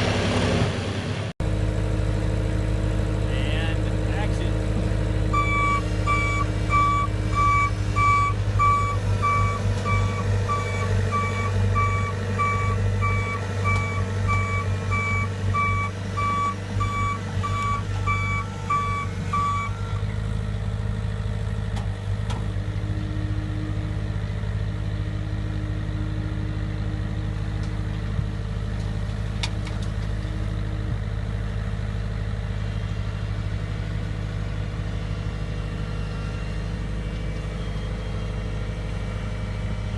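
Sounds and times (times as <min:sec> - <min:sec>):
reversing alarm beeping: 0:05.3 - 0:20.0, 0:35.9 - 0:38.6.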